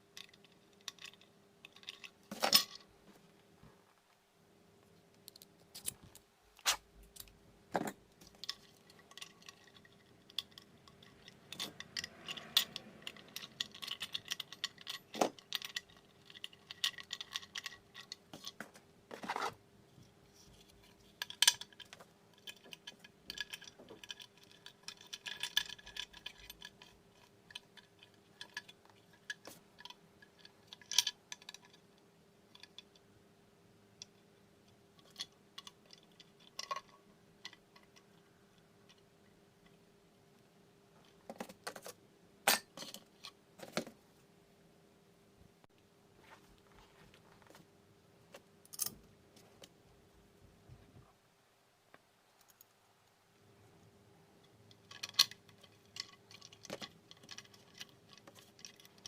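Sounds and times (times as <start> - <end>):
faint steady hum: 0.0 - 59.0
metal parts clinking: 8.3 - 18.6
metal scraping and jingling: 8.4 - 18.2.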